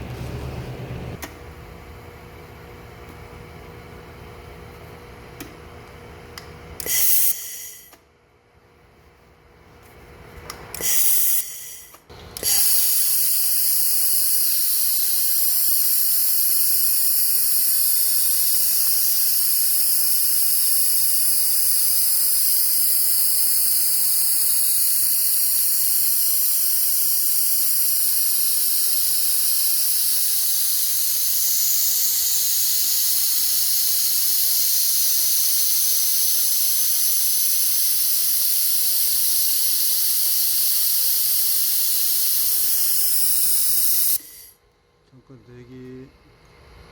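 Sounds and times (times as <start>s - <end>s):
shielding gas hissing: 6.8s - 8.0s, 10.7s - 44.6s.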